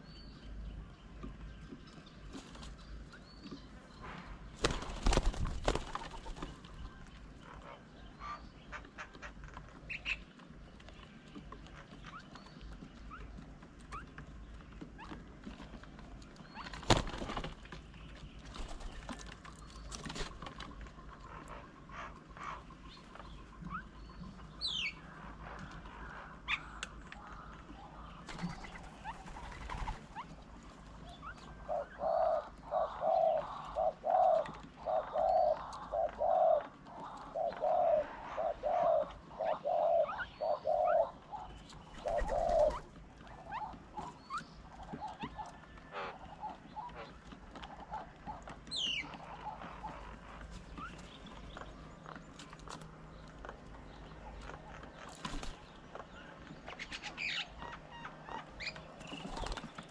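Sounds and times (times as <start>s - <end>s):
bird chirps: 16.4s - 47.2s, 47.9s - 59.9s
bird hooting: 31.3s - 47.2s.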